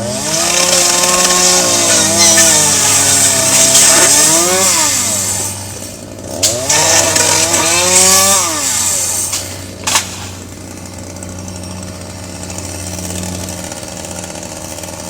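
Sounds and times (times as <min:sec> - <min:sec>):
chainsaw revving: 0:00.0 - 0:15.0
sharp crack: 0:00.2 - 0:10.8.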